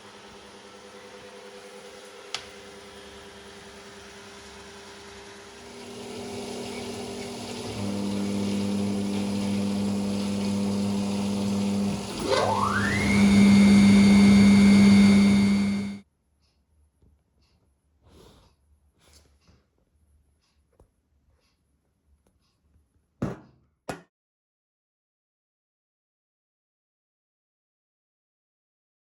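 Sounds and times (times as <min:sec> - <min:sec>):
washing machine motor whine: 0:00.0 - 0:16.0.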